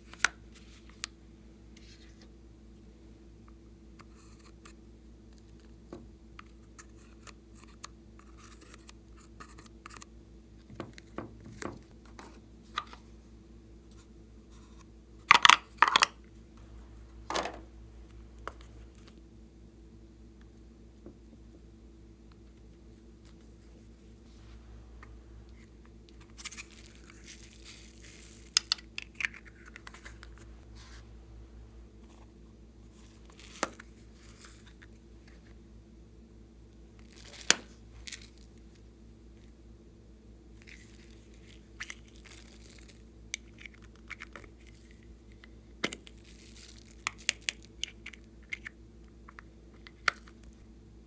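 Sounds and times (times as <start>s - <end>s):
faint steady hum: 0.0s - 51.0s.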